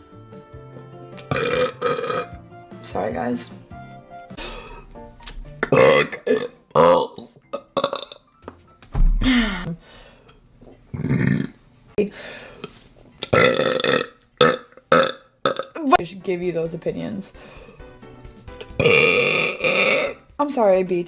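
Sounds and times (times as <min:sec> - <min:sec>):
woman burping: 0:00.8 - 0:02.3, 0:05.6 - 0:08.2, 0:10.9 - 0:11.6, 0:13.2 - 0:15.8, 0:18.6 - 0:20.2.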